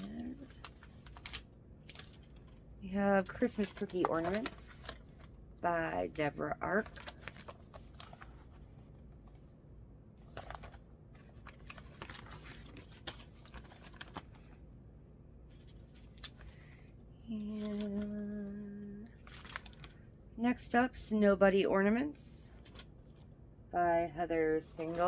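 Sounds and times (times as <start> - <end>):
magazine pages rustling: 0.0 - 9.4, 10.2 - 14.7, 15.4 - 16.8, 17.4 - 18.2, 19.1 - 20.1, 22.5 - 23.3, 24.5 - 25.0.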